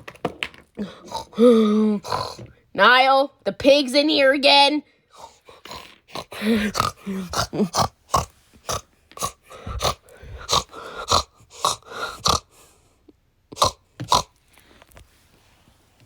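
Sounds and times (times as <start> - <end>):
pig grunting and snorting: 0.8 - 2.6, 5.2 - 12.8, 13.5 - 14.4.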